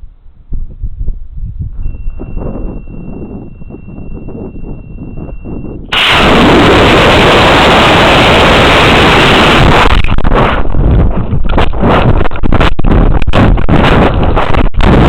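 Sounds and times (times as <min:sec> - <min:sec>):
wind buffeting: 0:00.0 - 0:15.0
high beep: 0:01.8 - 0:05.8
rocket motor roar: 0:05.9 - 0:15.0.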